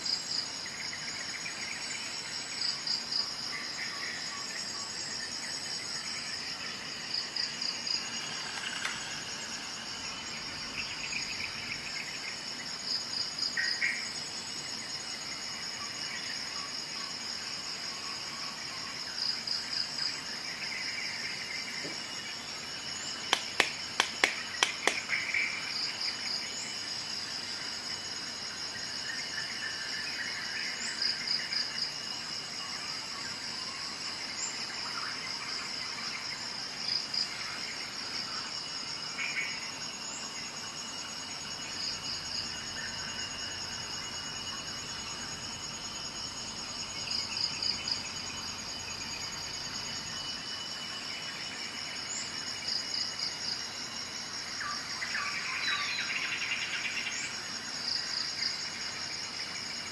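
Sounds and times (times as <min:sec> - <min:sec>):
insects trilling: 0:00.0 - 0:59.9.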